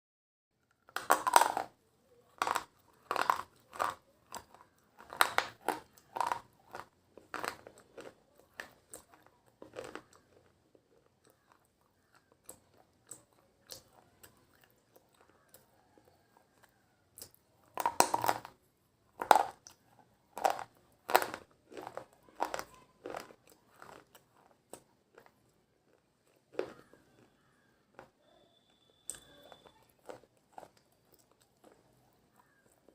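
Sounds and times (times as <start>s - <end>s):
slate pencils crunching: 2.3s - 12.8s, 20.4s - 32.8s.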